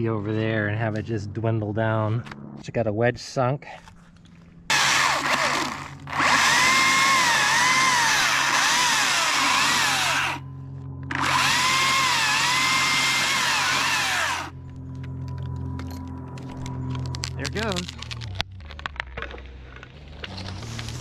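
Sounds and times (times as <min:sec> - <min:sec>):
chainsaw cutting wood: 0:04.7 - 0:10.4, 0:11.1 - 0:14.6, 0:20.2 - 0:21.0.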